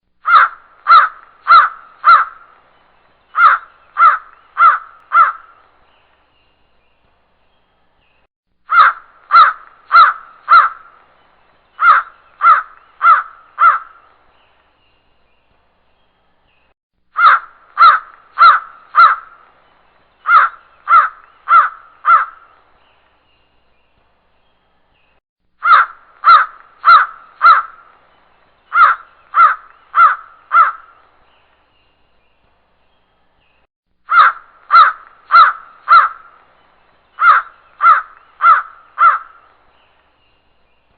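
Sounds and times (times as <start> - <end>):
crow cawing: 0.2 - 2.5, 3.4 - 5.6, 8.7 - 11.0, 11.8 - 14.1, 17.2 - 19.4, 20.3 - 22.5, 25.6 - 27.9, 28.7 - 31.0, 34.1 - 36.4, 37.2 - 39.5.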